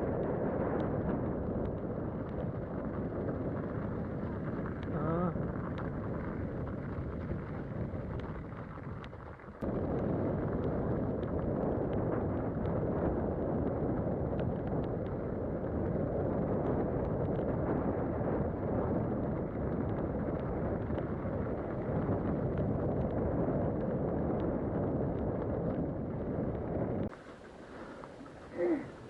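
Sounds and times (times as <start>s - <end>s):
wind rushing over microphone: 0.0s - 29.0s.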